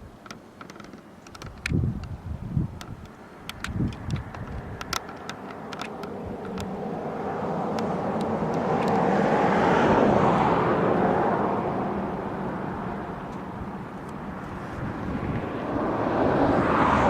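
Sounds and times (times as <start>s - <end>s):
vehicle passing by: 3.4s - 17.0s.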